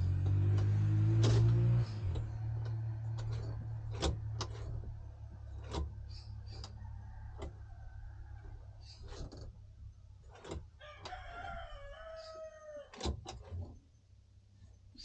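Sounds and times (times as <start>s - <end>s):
irregular clicks and ticks: 0.0s - 7.7s.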